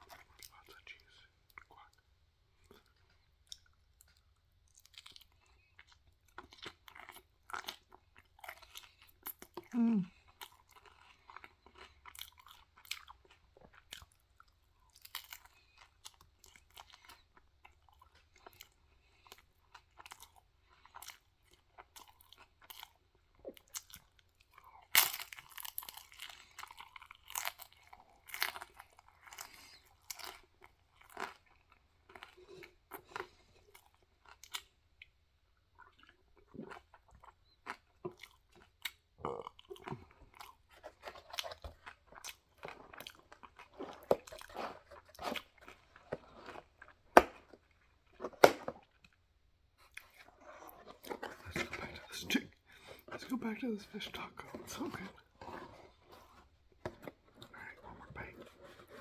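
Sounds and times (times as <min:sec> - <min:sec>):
crunchy chewing: 0:35.8 - 0:49.2.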